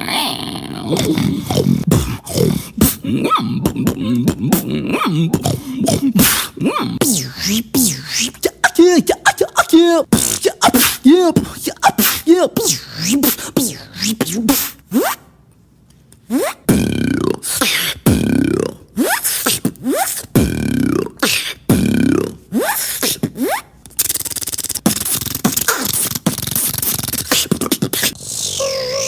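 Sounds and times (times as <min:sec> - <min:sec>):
beatboxer falling pitched zaps: 0:00.9 - 0:15.3, 0:16.2 - 0:29.0
beatboxer hissing buzz: 0:05.3 - 0:15.2, 0:19.0 - 0:29.0.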